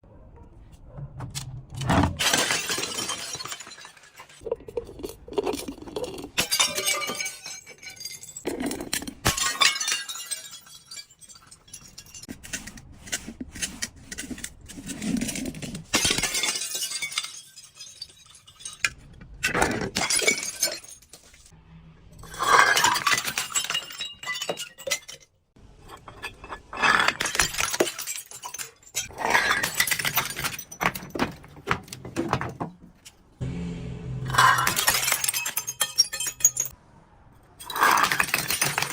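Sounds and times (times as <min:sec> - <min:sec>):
glass breaking and crunching: 0:02.2 - 0:04.4, 0:06.4 - 0:12.3, 0:15.3 - 0:21.4, 0:22.4 - 0:25.3, 0:26.1 - 0:31.5, 0:34.3 - 0:36.8, 0:37.6 - 0:38.9.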